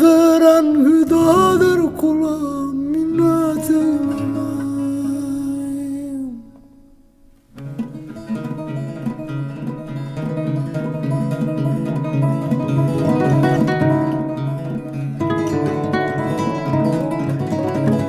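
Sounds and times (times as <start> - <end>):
plucked-string folk instrumental: 0.0 - 18.0.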